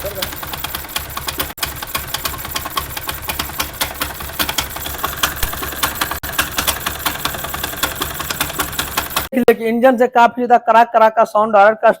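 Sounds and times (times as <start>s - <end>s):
motorcycle engine running: 0.0s - 9.3s
rapid clattering knock: 0.0s - 9.3s.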